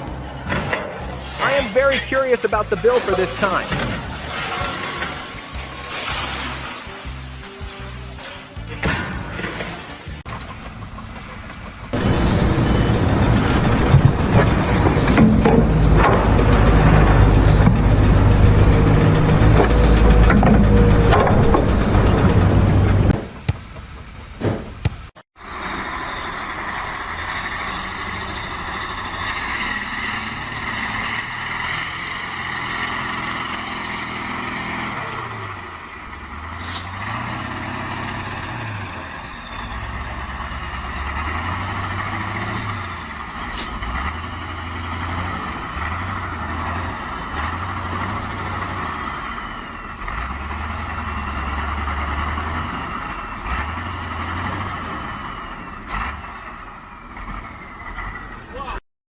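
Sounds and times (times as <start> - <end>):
engine revving: 0.0 - 10.3, 11.7 - 23.3, 25.4 - 58.8.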